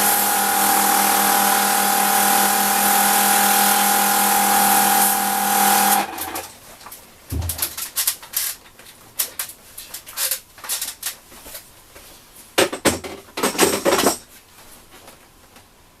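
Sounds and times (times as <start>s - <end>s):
washer pump humming: 0.0s - 6.5s.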